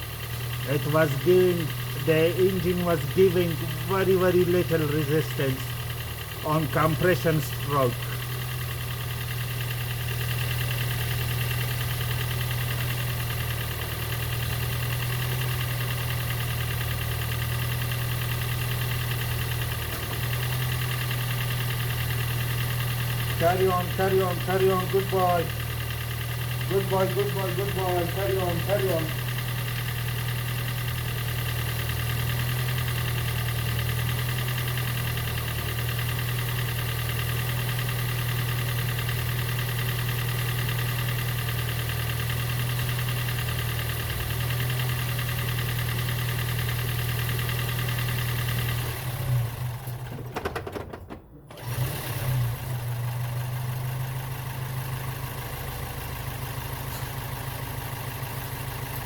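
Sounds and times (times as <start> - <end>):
car engine running: 0.0 - 59.0.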